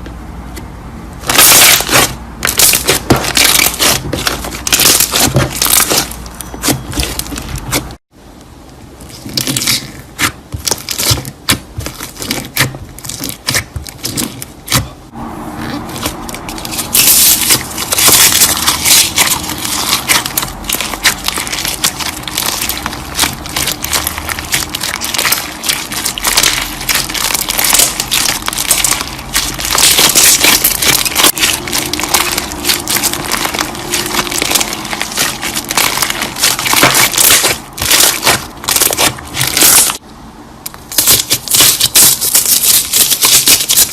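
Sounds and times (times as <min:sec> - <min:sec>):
slime clicking and popping: 0:16.0 - 0:40.0.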